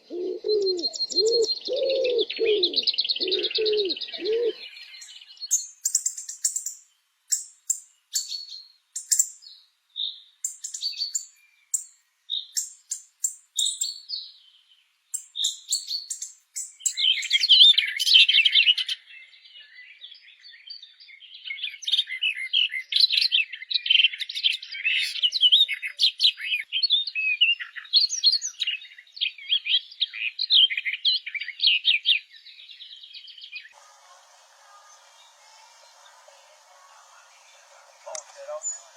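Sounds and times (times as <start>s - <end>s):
fast warbling birdsong: 0.0s - 14.3s, 15.2s - 19.1s, 34.7s - 38.9s
songbird chirps: 0.0s - 38.9s.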